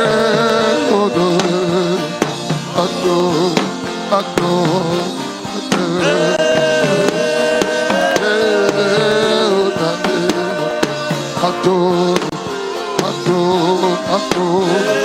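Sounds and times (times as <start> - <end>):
drum and percussion hits: 0.0 - 15.0
gospel worship music: 0.0 - 15.0.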